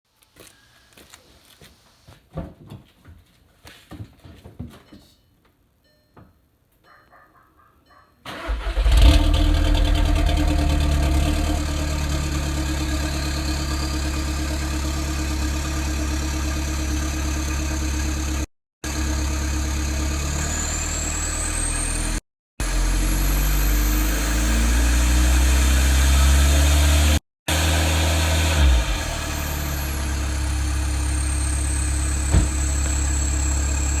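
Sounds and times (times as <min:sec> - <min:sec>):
diesel engine starting and running: 0:08.3 - 0:34.0.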